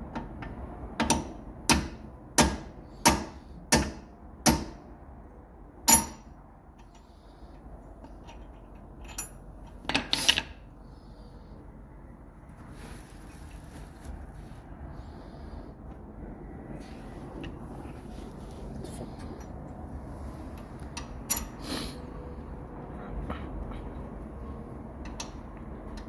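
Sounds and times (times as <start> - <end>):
hammer striking metal: 1.0 - 4.8, 5.8 - 6.4.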